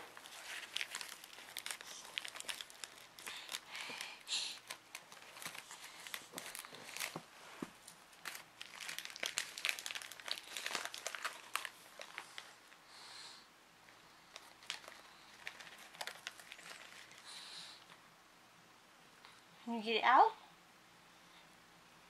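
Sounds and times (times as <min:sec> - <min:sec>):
packaging crinkling and rustling: 0:00.0 - 0:12.8, 0:14.2 - 0:17.9.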